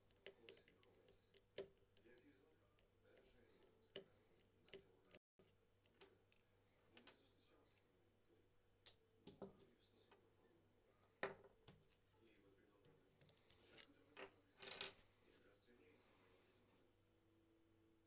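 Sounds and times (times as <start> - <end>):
faint clicks and taps: 0.0 - 7.3.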